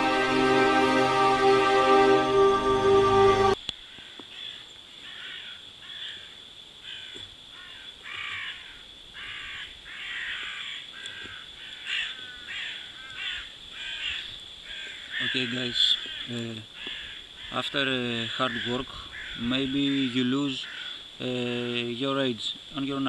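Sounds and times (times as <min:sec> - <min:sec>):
high-pitched tone: 0:00.0 - 0:03.6
intro music: 0:00.0 - 0:03.6
birds calling in harsh notes: 0:09.3 - 0:21.7.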